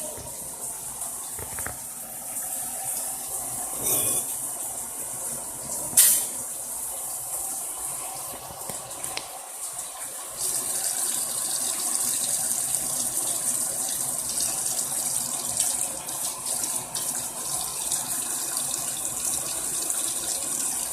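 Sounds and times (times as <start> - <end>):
tap running into sink: 1.3 - 1.9.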